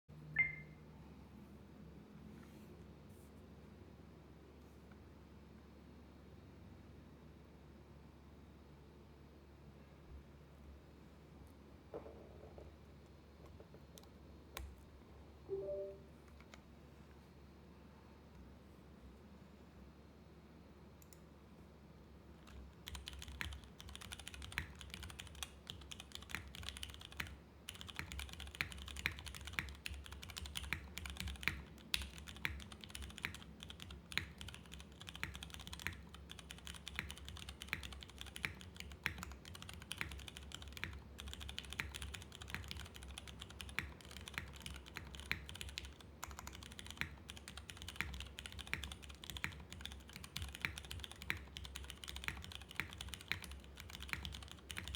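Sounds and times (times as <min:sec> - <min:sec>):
mechanical keyboard typing: 0:22.4 - 0:54.9.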